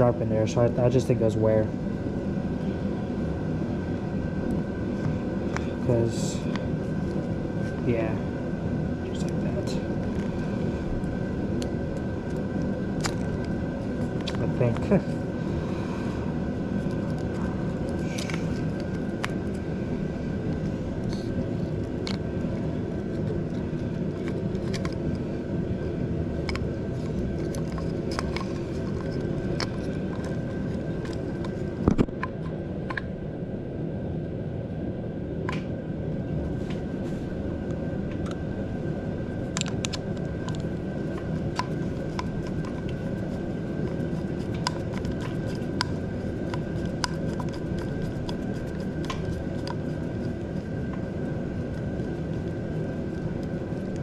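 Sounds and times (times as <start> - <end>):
steady low rumble: 0.0 - 54.0.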